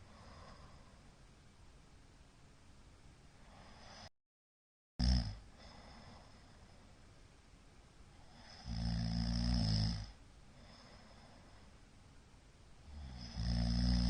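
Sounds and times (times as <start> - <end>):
man snoring: 3.6 - 4.1, 5.0 - 6.0, 8.2 - 10.2, 12.8 - 14.0.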